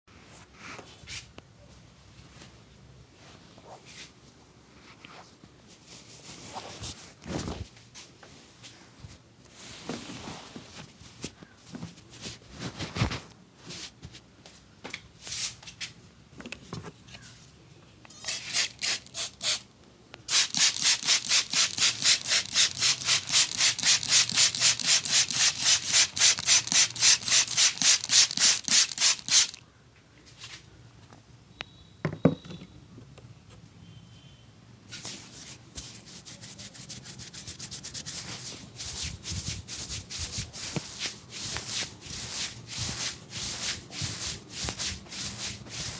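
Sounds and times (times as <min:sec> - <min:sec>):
hands rubbing over skin: 0:20.4 - 0:29.6, 0:35.0 - 0:45.9.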